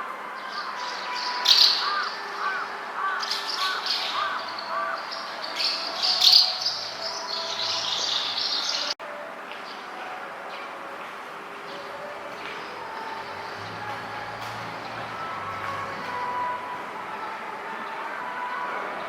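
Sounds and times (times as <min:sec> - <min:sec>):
bird chicks chirping: 0:00.4 - 0:09.0.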